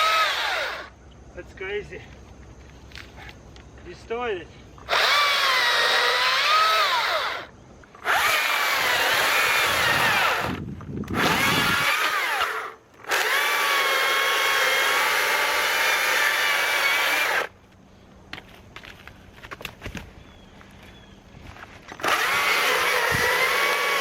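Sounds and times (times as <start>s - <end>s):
electric chainsaw whining: 0.0s - 0.9s, 4.8s - 17.5s, 21.9s - 24.0s.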